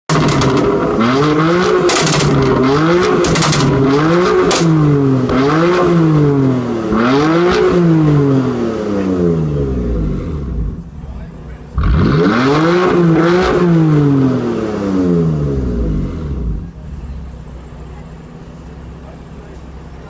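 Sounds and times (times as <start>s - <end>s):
exhaust crackles and pops: 0.1s - 5.5s
car engine revving: 0.1s - 17.4s.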